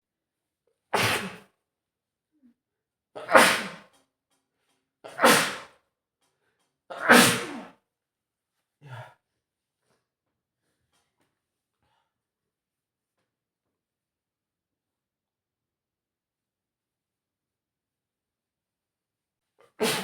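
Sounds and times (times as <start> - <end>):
man sneezing: 1.0 - 1.4, 3.2 - 3.9, 5.1 - 5.7, 6.9 - 7.8, 19.7 - 20.0.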